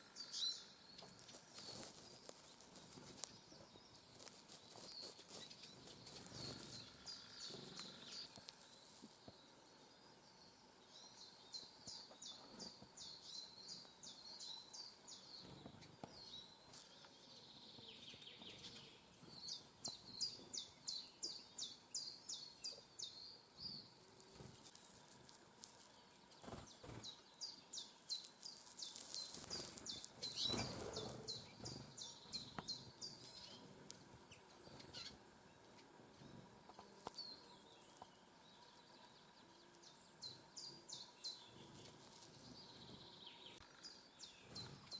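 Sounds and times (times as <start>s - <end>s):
songbird singing: 0.0s - 44.9s
short rustle: 1.0s - 6.9s, 28.2s - 31.8s.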